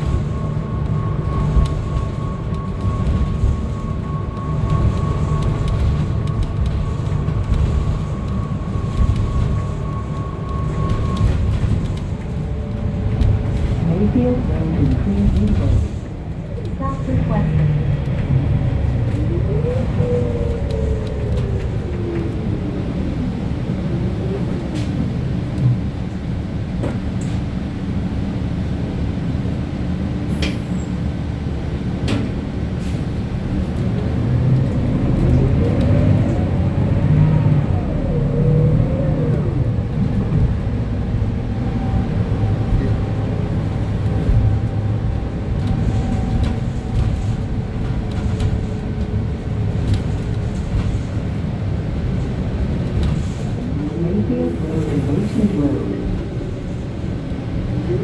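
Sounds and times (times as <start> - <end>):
bus engine rumble and whine: 0.0 - 58.0
clicks and knocks from bus body: 26.7 - 27.5, 32.0 - 32.4.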